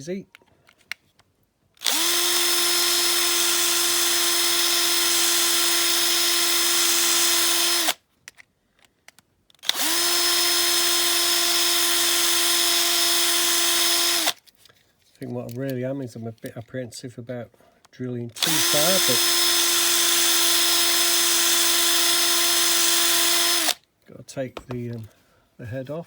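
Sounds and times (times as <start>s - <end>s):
electric drill whining: 1.8s - 8.0s, 9.6s - 14.4s, 18.4s - 23.8s.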